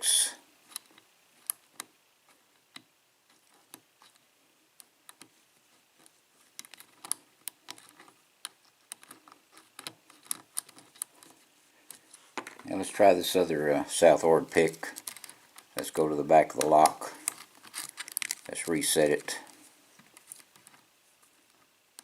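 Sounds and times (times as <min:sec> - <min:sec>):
lock pick clicking and scraping: 0:06.0 - 0:12.0, 0:14.9 - 0:15.7, 0:16.7 - 0:18.5.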